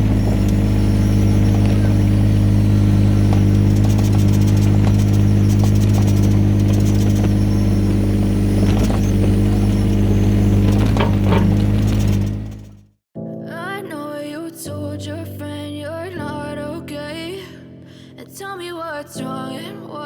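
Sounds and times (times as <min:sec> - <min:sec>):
excavator diesel engine running: 0:00.0 - 0:12.8.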